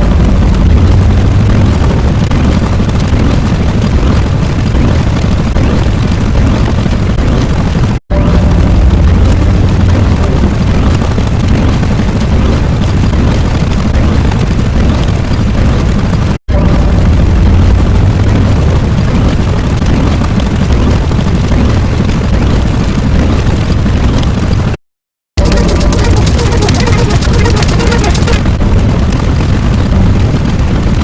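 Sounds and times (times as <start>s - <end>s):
deep rumbling explosion: 0.0s - 24.7s, 28.4s - 31.0s.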